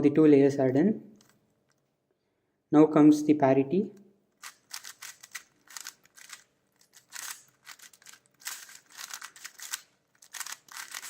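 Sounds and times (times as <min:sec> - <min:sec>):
puzzle cube clicking turns: 0:04.3 - 0:11.0.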